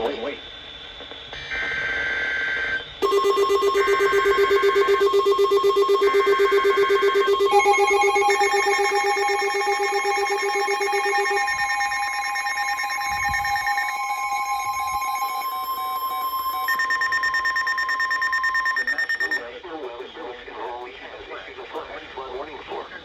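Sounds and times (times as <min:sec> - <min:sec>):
screechy digital data bursts: 0:01.3 - 0:19.5
rapidly pulsing lower tone: 0:03.0 - 0:19.0
steady electronic alert tones: 0:03.0 - 0:19.5.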